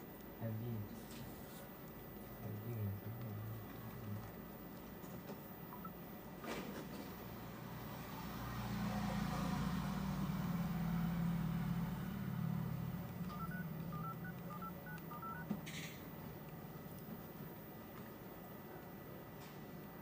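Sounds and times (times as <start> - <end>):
phone electronic beeps: 5.7 - 6.0, 13.3 - 15.5.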